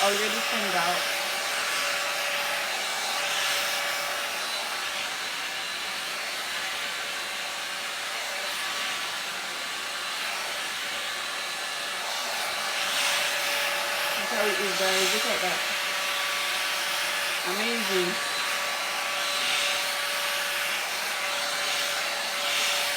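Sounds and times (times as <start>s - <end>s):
hot-air dryer brush blowing: 0.0s - 22.9s.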